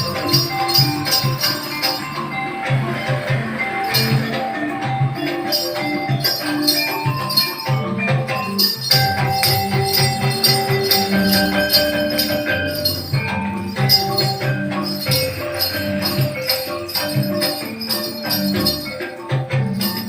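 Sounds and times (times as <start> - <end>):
bright jingling: 0.0 - 20.0
drum beating quick rhythm: 0.0 - 20.0
ringing metallophone notes: 0.0 - 20.0.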